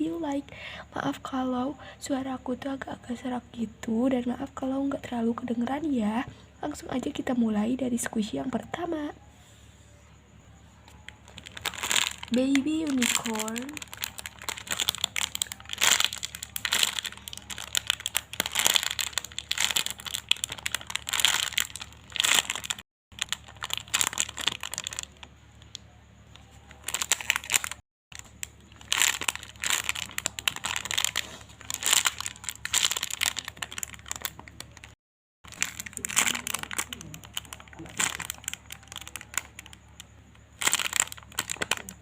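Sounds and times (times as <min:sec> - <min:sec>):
plastic wrapper crinkling: 0:11.0 - 0:42.0.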